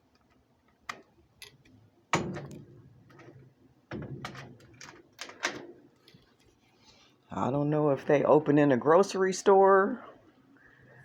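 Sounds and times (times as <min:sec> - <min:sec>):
sharp knocks and thumps: 0:02.1 - 0:04.8.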